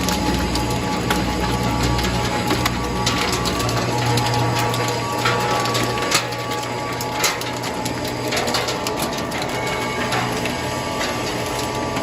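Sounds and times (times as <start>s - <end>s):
plastic cracking: 0.0s - 12.0s
shredder motor hum: 0.0s - 12.0s.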